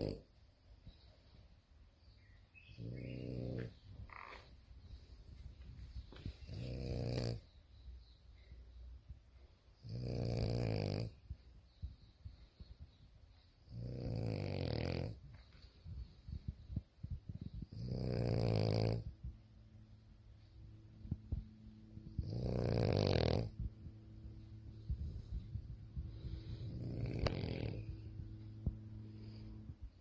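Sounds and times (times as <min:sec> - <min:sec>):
dog snoring: 0:00.0 - 0:00.3, 0:02.7 - 0:03.8, 0:06.2 - 0:07.5, 0:09.8 - 0:11.3, 0:13.6 - 0:15.2, 0:17.5 - 0:19.2, 0:22.1 - 0:23.7, 0:26.2 - 0:28.2.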